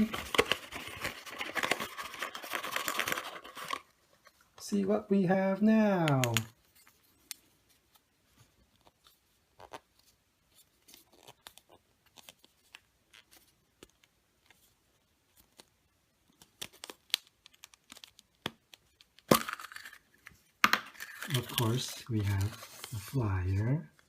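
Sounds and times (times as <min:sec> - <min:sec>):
plastic capsule and wrapper crinkling: 0:00.0 - 0:04.6, 0:06.0 - 0:07.5, 0:10.9 - 0:24.0.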